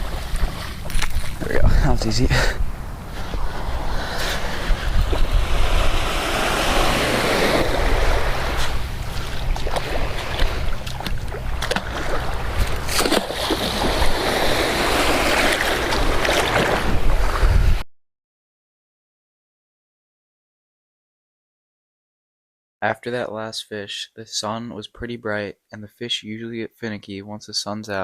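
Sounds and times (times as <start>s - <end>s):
waves breaking on a beach: 0.0s - 17.6s
wind buffeting microphone: 0.0s - 17.8s.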